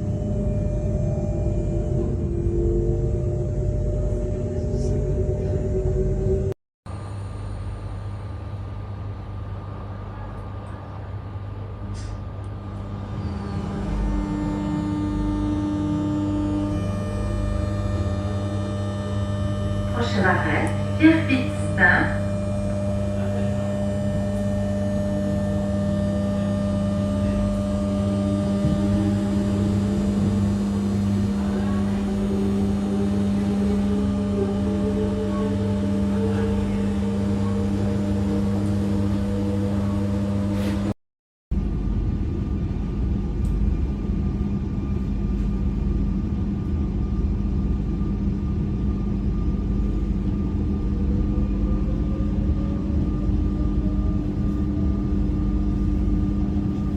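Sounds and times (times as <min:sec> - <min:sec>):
electric train hum: 0:00.0 - 0:56.9
train rumble: 0:09.1 - 0:40.9, 0:41.6 - 0:56.9
traction motor whine: 0:12.4 - 0:41.0, 0:48.6 - 0:56.9.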